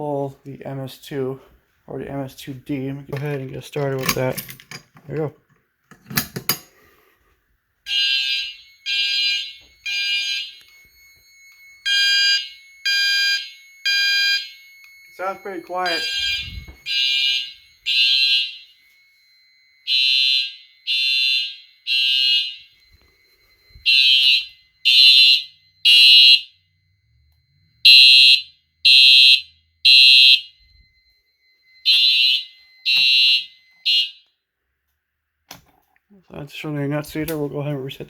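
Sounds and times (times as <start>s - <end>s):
fire alarm horn blasts: 7.9s - 34.5s
faint steady high tone: 14.5s - 16.9s, 22.6s - 27.9s, 30.5s - 33.9s.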